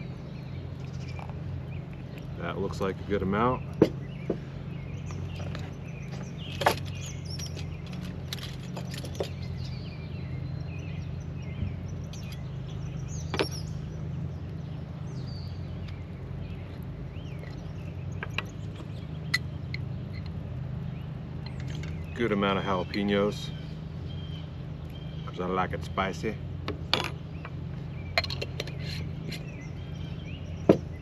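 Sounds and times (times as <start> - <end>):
birds chirping: 0.0 - 31.0
steady low hum: 0.0 - 31.0.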